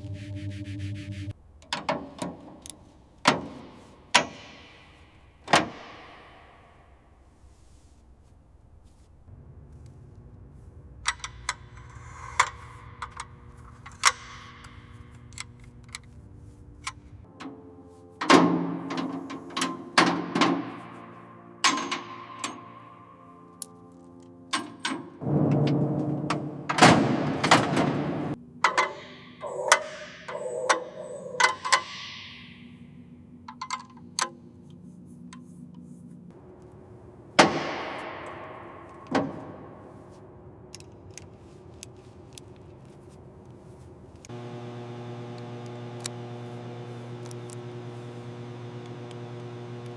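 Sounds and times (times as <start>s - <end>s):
low steady hum: 6.6s - 17.3s.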